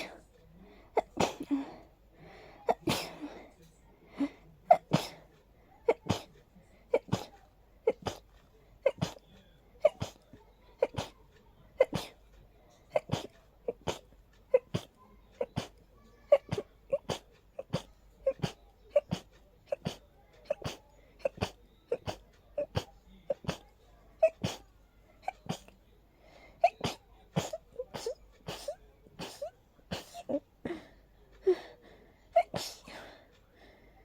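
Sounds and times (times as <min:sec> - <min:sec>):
person sneezing: 0:09.8 - 0:10.2, 0:26.6 - 0:30.8, 0:32.4 - 0:33.2.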